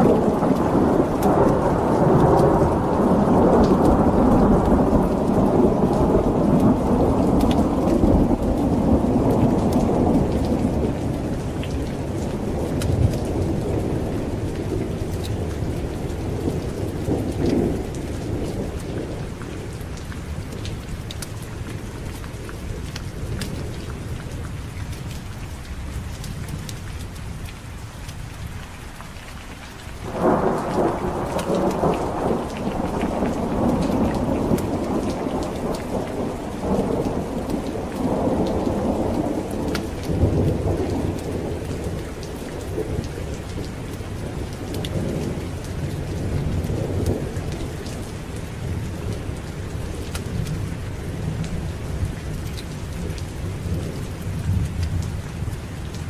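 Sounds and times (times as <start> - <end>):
thunder clap rolling: 0.0 - 19.3, 30.0 - 48.1
steady rain: 0.0 - 56.0.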